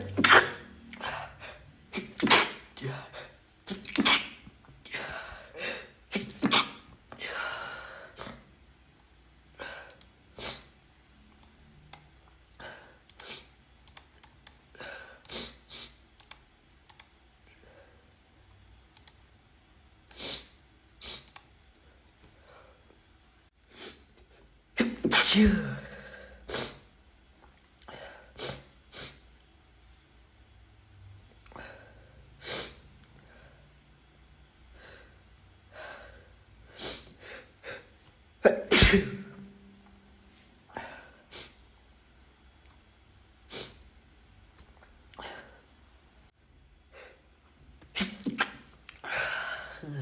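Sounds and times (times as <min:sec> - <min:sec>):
person sneezing: 0:00.0 - 0:07.4, 0:24.8 - 0:26.8, 0:36.8 - 0:39.6, 0:47.9 - 0:50.0.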